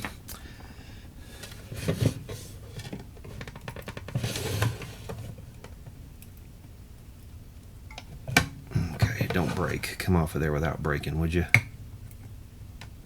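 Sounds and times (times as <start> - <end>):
radio parts knocking and rattling: 1.4 - 6.0, 7.9 - 13.0.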